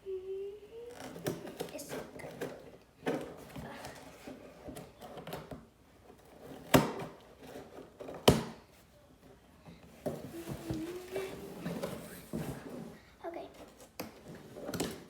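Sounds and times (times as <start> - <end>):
cardboard box rustling and scraping: 10.1 - 13.0.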